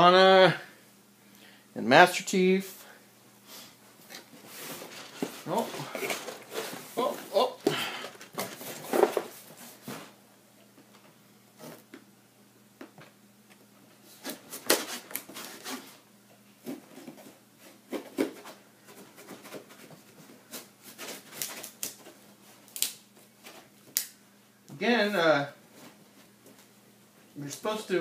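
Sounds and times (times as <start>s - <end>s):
cardboard packaging rustling: 4.1s - 10.2s, 14.1s - 16.0s.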